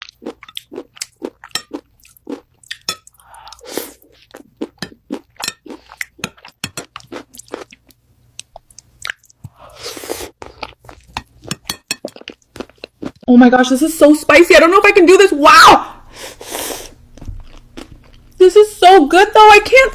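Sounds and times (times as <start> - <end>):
crunching and wet chewing: 0.0 - 13.3, 17.1 - 18.4.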